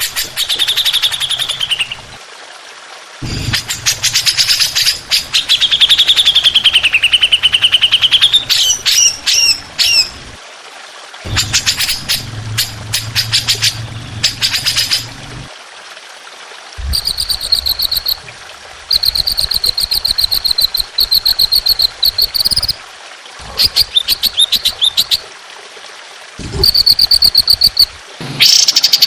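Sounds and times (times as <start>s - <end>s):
songbird rapid trills: 0.0s - 2.2s, 3.5s - 10.2s, 11.3s - 15.2s, 16.8s - 18.2s, 18.9s - 22.8s, 26.6s - 29.0s.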